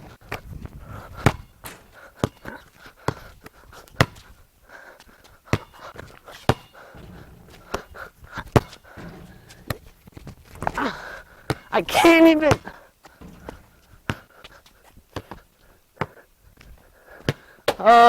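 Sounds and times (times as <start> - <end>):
basketball hitting backboard and rim: 1.2 - 2.5, 4.0 - 4.2, 5.5 - 14.4.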